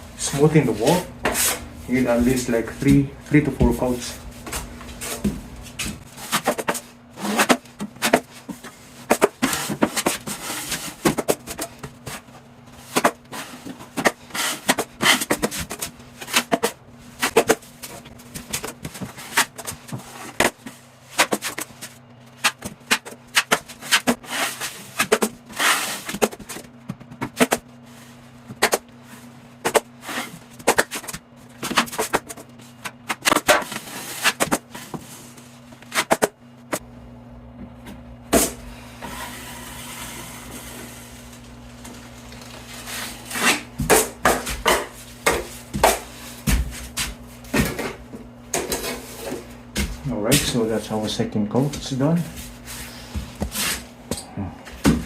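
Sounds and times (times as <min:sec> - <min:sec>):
drywall knife scraping: 0:06.1 - 0:12.2, 0:12.8 - 0:17.6, 0:18.6 - 0:26.6, 0:42.4 - 0:46.9.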